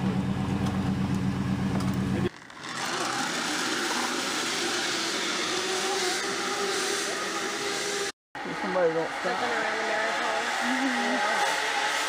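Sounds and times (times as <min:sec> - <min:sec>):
vehicle engine running: 0:00.0 - 0:02.4.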